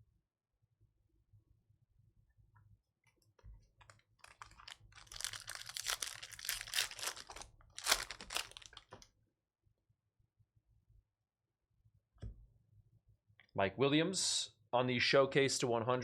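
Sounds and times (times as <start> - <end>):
plastic wrapper crinkling: 3.8 - 9.0.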